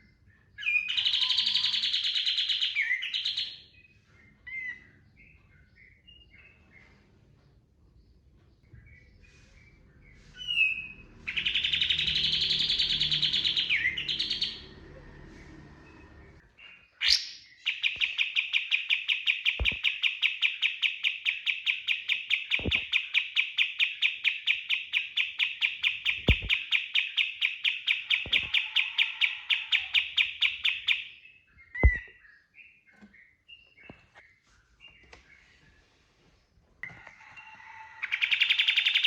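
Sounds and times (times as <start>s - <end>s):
bird chirping rapidly: 0.6s - 3.7s, 10.4s - 14.9s, 17.0s - 33.7s, 38.0s - 39.0s
low thumps: 19.6s - 19.8s, 26.2s - 26.6s, 31.8s - 32.1s.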